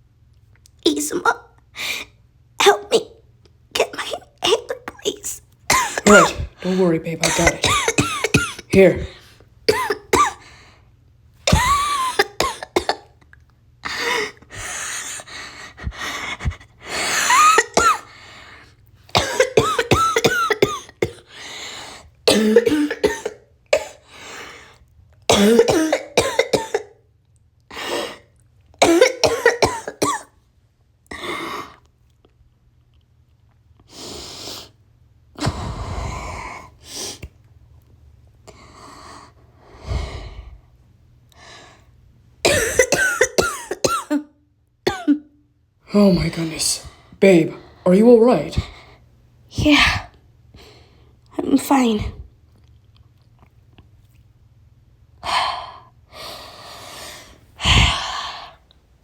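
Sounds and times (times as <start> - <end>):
person coughing hard: 5.7 - 9.1, 9.7 - 10.4, 11.5 - 13.1, 17.1 - 18.1, 19.2 - 21.3, 22.3 - 24.0, 25.3 - 26.9, 28.8 - 30.3, 42.4 - 44.2, 44.9 - 45.2.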